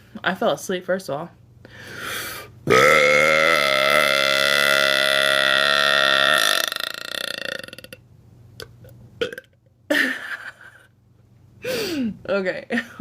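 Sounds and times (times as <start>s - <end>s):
woman burping: 2.7s - 8.0s, 9.2s - 9.5s.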